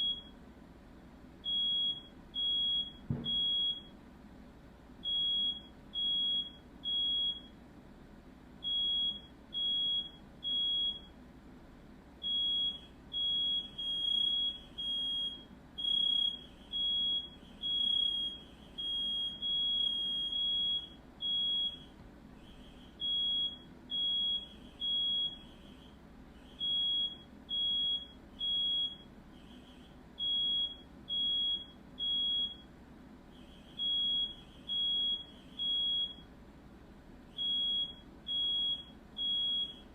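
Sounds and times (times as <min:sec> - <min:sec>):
smoke alarm beeping: 0:00.0 - 0:00.4, 0:01.4 - 0:03.9, 0:05.0 - 0:07.5, 0:08.6 - 0:11.1, 0:12.2 - 0:21.9, 0:22.5 - 0:25.9, 0:26.5 - 0:32.7, 0:33.4 - 0:36.3, 0:37.4 - 0:39.9.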